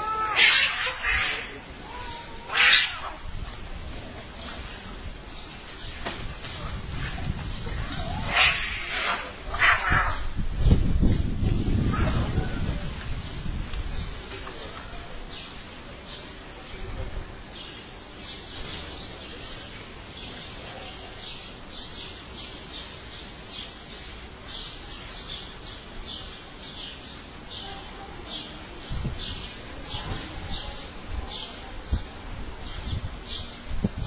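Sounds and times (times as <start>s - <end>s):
low bumps and rumbles: 3.3s - 8.3s, 10.1s - 15.0s.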